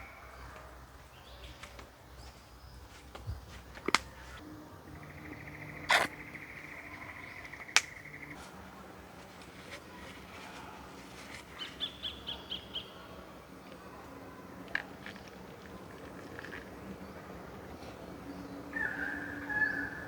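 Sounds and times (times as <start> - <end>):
bird calling high notes: 4.4 - 8.4.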